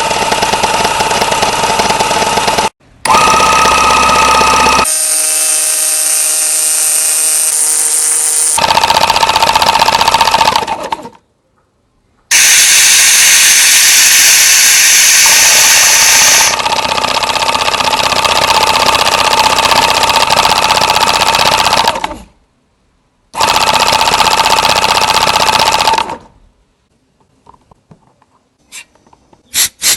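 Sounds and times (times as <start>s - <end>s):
air compressor chattering: 0.0s - 11.1s, 12.3s - 22.2s, 23.4s - 26.2s.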